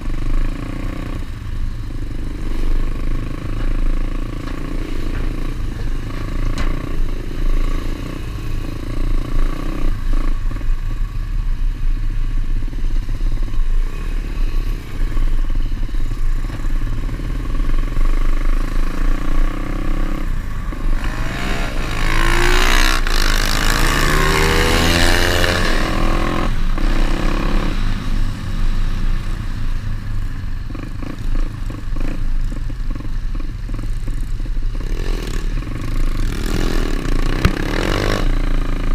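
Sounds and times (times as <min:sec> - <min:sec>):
motorbike engine revving: 0:13.7 - 0:28.3, 0:34.8 - 0:38.9.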